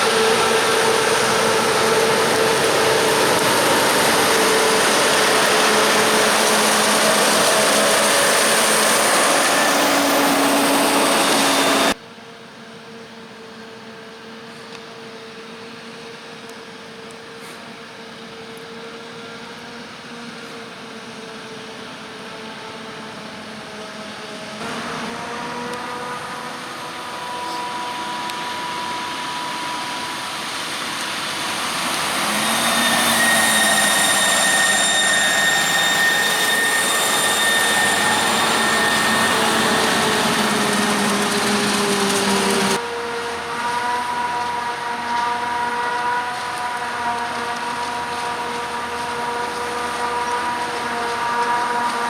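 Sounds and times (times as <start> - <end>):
heavy machinery engines running: 0.0 - 12.0, 21.0 - 52.0
high machine whine: 0.0 - 12.0, 24.6 - 52.0.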